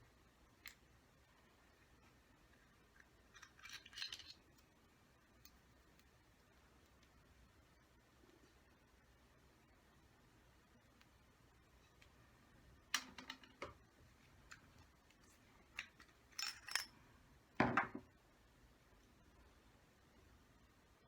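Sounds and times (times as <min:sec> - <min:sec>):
metal parts rattling: 0:03.3 - 0:04.4, 0:15.8 - 0:16.9
metal parts clicking and clinking: 0:03.3 - 0:04.7, 0:15.7 - 0:17.0.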